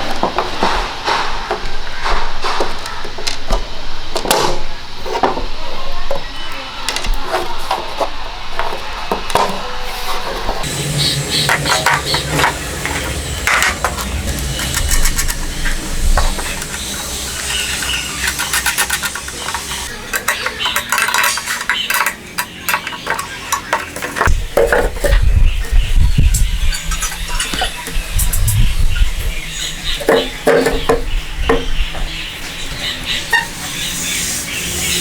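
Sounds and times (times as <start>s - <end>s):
scraping and rasping: 7.1s - 25.8s.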